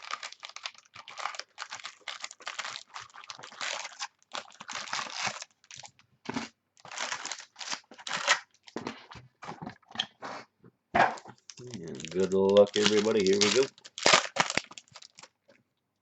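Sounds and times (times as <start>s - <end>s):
plastic wrapping crinkling and tearing: 0.0s - 6.0s, 6.8s - 9.2s, 11.4s - 15.4s.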